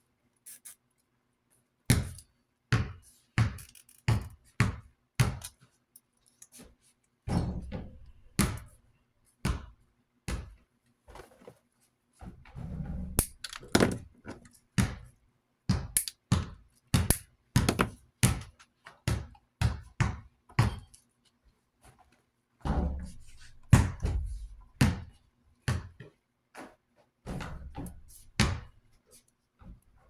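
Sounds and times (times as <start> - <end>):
metal parts knocking and clicking: 13.2 - 14.5, 16.0 - 16.2.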